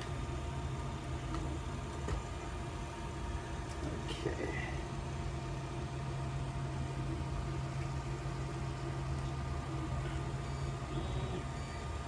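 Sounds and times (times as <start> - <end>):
low machine hum: 0.0 - 12.0
faint steady tones: 4.6 - 12.0.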